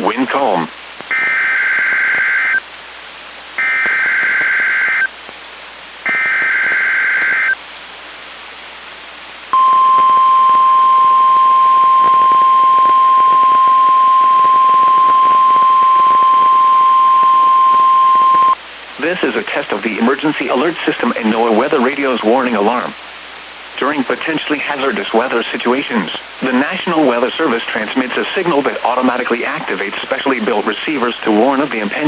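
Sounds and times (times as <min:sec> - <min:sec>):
digital data tone bursts: 0:09.6 - 0:18.6
steady warning alarm tone: 0:09.6 - 0:18.6.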